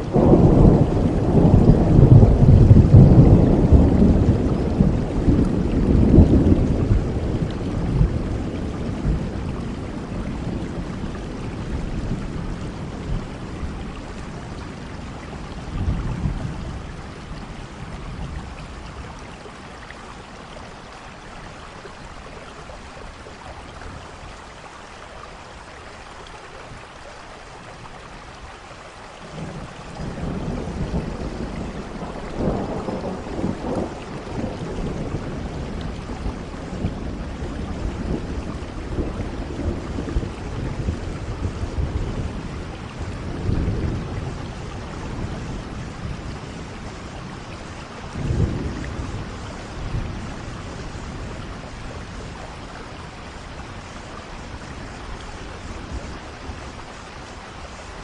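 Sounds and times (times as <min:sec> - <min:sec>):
rolling thunder: 0:00.0 - 0:19.8, 0:29.2 - 0:57.0
steady rain: 0:00.0 - 0:58.0.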